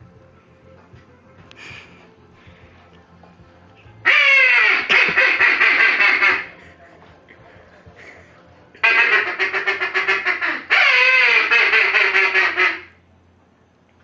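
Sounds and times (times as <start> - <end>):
duck quacking: 4.0 - 6.6, 8.8 - 13.0.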